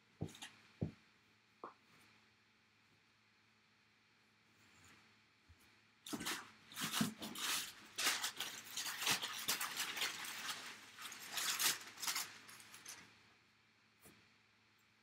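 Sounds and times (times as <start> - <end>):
packaging rustling and crinkling: 6.1 - 13.1.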